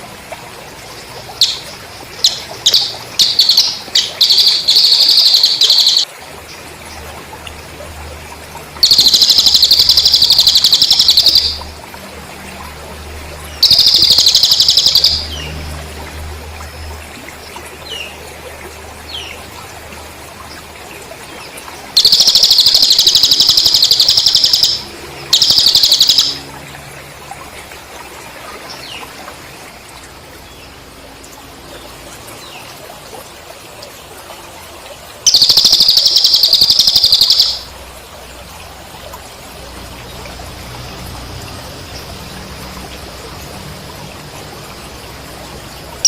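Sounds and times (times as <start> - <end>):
cricket chirping trills: 1.3 - 6.1, 8.8 - 11.8, 13.5 - 15.6, 21.9 - 26.6, 35.2 - 37.8
faint bird chirps: 1.4 - 6.1, 35.3 - 37.7.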